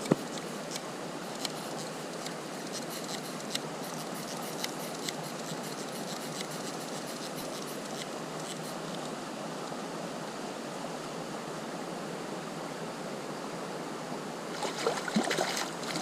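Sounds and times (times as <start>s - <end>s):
handling clicks and scrapes: 0.0s - 9.2s
river water rushing: 14.4s - 16.0s.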